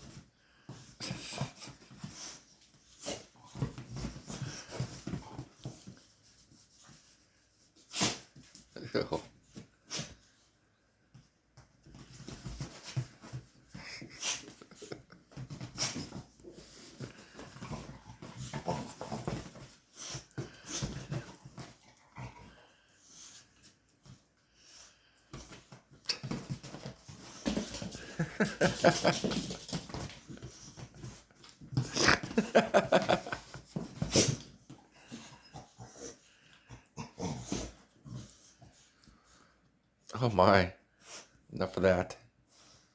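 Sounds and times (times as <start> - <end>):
dogs growling in play: 15.8 - 23.4, 27.2 - 39.3.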